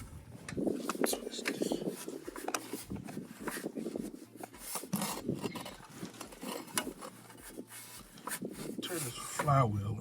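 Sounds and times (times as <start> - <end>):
metal tools clinking and scraping: 4.8 - 7.4.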